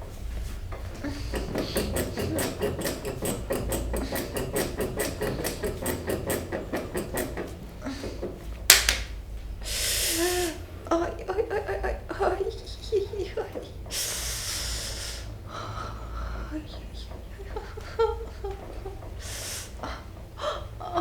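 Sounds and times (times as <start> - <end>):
rapid hand tapping on body: 1.0 - 9.1
loud sharp slap: 8.7 - 9.2.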